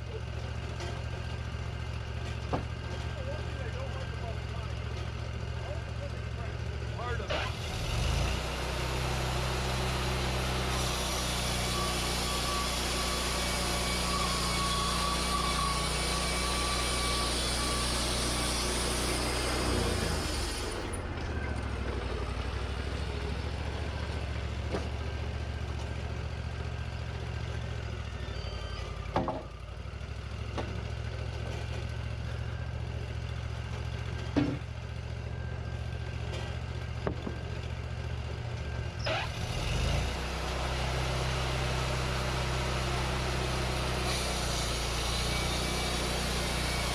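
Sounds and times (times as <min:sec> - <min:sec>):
sawmill engine running: 0:00.0 - 0:46.9
blade hiss cutting log: 0:10.8 - 0:20.9, 0:44.0 - 0:46.9.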